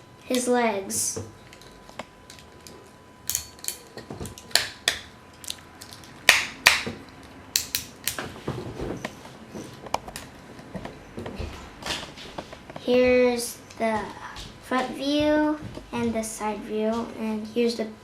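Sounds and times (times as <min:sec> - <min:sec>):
toy parts clicking and snapping: 0:02.3 - 0:08.2.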